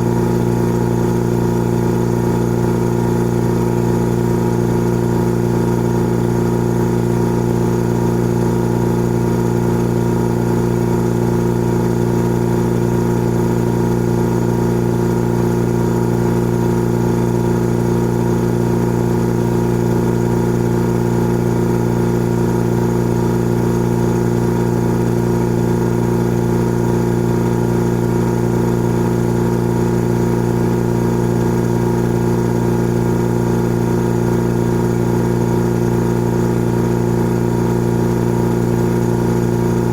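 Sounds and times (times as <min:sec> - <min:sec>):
air compressor humming: 0:13.2 - 0:39.9.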